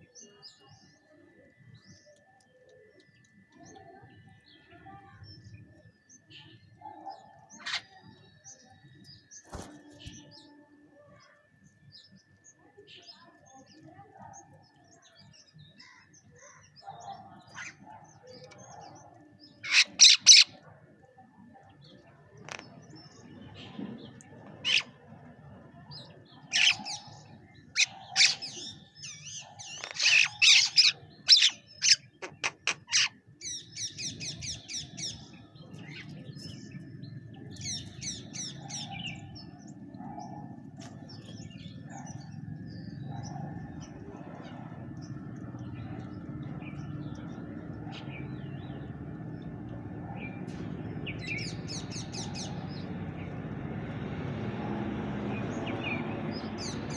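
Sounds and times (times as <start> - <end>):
mynas squawking and chattering: 6.9 - 8.3, 16.4 - 20.7, 24.4 - 25.1, 26.3 - 48.3.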